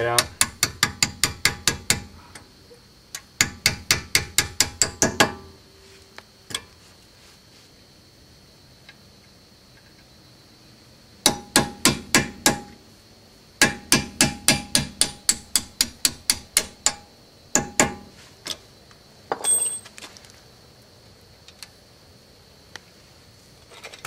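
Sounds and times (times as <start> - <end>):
hammer striking metal punch: 11.2 - 12.7, 13.6 - 18.1.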